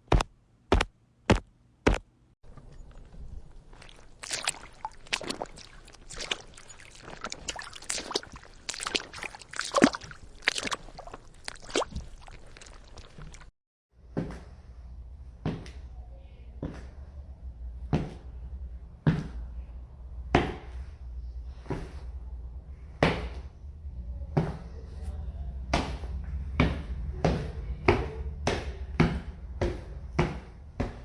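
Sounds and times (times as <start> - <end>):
squelching footsteps in wet ground: 0.7 - 13.5
footsteps on hard surface: 3.7 - 13.5.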